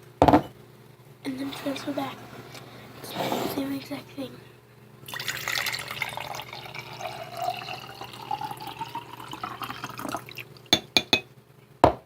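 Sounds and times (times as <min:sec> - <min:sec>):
water pouring into a glass: 0:05.1 - 0:11.1
glass clicks: 0:10.8 - 0:11.3.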